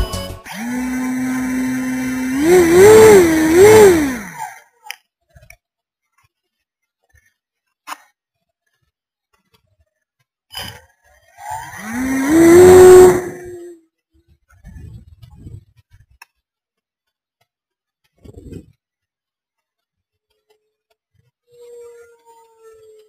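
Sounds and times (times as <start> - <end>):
simulated engine revving: 0.5 - 4.5, 11.4 - 13.7.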